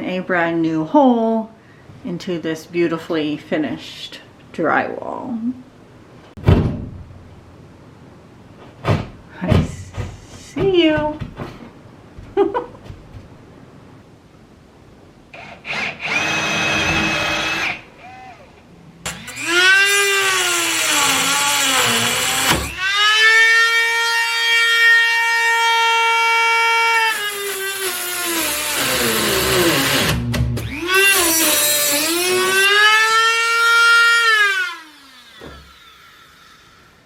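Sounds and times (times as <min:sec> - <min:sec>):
power tool cutting drywall: 0:15.4 - 0:18.2, 0:19.1 - 0:37.0.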